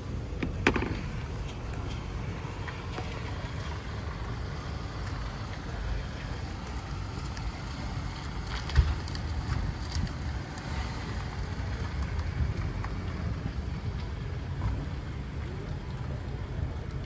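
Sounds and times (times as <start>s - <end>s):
low outdoor rumble: 0.0s - 17.0s
thump: 0.4s - 1.1s.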